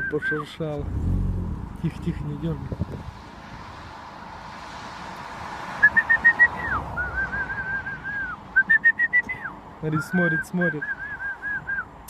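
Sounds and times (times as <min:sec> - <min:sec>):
person whistling a melody: 0:05.9 - 0:11.9.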